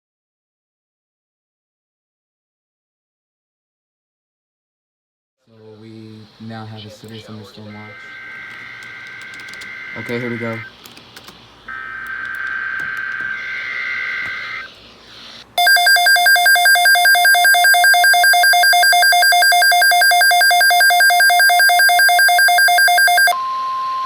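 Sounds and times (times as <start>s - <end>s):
steady warning tone: 7.6s - 10.8s, 11.6s - 24.0s
pulsing electronic alarm: 7.7s - 10.7s, 11.7s - 24.0s.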